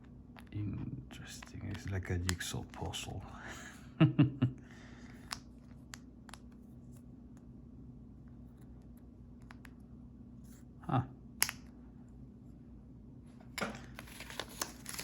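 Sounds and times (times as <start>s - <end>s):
steady low hum: 0.0s - 15.0s
paper rustling: 13.9s - 15.0s.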